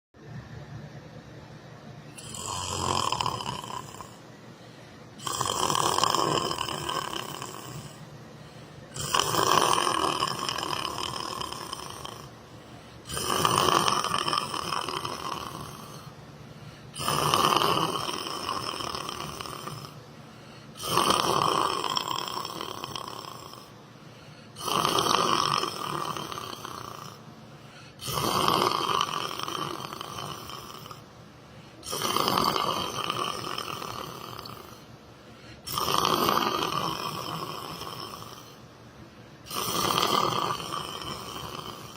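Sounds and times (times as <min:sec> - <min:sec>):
person snoring: 0:02.1 - 0:38.7, 0:39.4 - 0:41.9.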